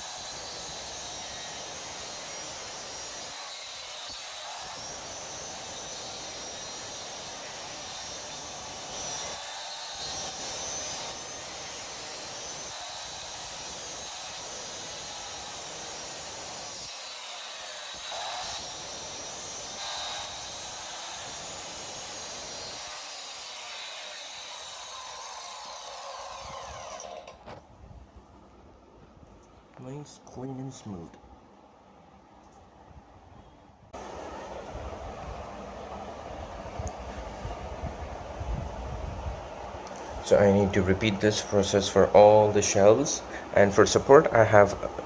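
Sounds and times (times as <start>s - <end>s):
circular saw cutting wood: 0.0s - 27.6s.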